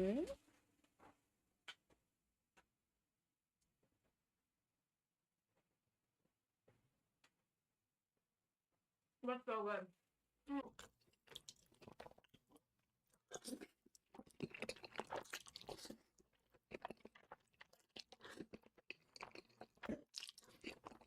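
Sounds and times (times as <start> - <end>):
person chewing and crunching food: 10.7 - 21.0.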